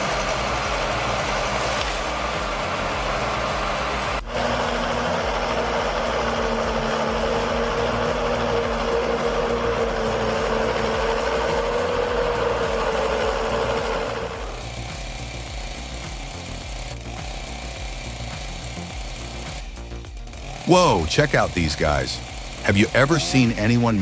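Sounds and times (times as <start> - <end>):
heavy machine engine droning: 0.0 - 15.0.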